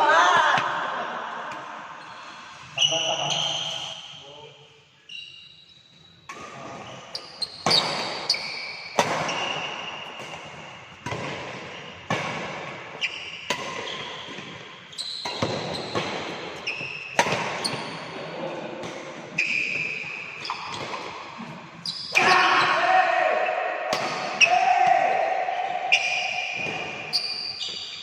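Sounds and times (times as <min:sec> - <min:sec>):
shoe squeaks: 0:02.0 - 0:04.4, 0:05.0 - 0:10.2, 0:13.0 - 0:18.1, 0:19.4 - 0:21.0, 0:21.8 - 0:22.6, 0:25.9 - 0:28.0
racket hitting shuttlecock: 0:07.6 - 0:18.0, 0:18.8 - 0:21.3, 0:23.9 - 0:24.6.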